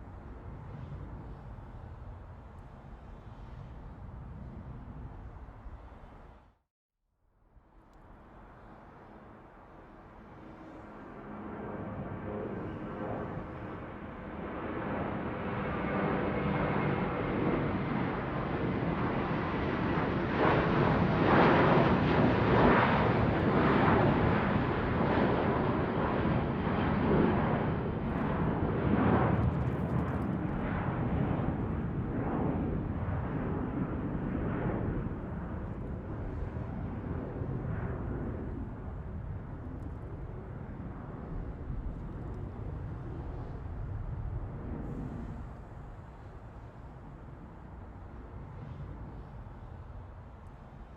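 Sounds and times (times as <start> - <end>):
airplane flying overhead: 0.0 - 6.6, 7.4 - 50.9.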